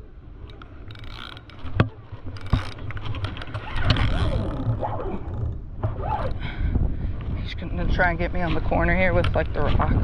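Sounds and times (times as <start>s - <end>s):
steady low rumble: 3.7s - 10.0s.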